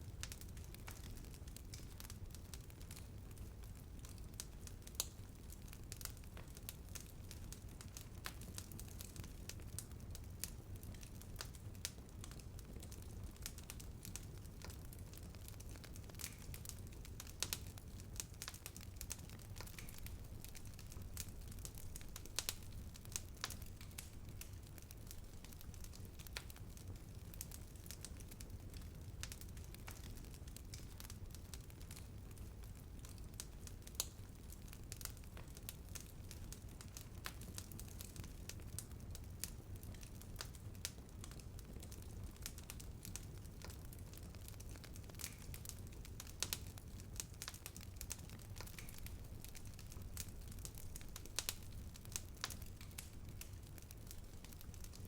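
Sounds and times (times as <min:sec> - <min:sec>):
low rumble of flames: 0:00.0 - 0:55.0
wood crackling and popping: 0:00.0 - 0:55.0.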